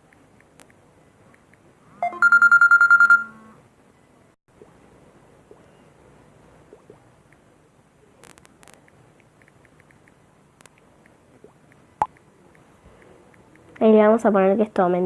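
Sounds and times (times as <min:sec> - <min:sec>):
phone alert beeps: 0:02.0 - 0:03.6.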